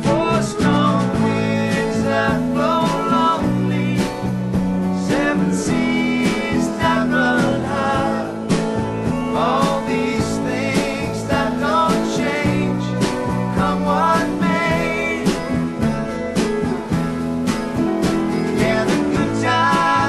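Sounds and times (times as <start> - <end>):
country song with guitar: 0.0 - 20.0.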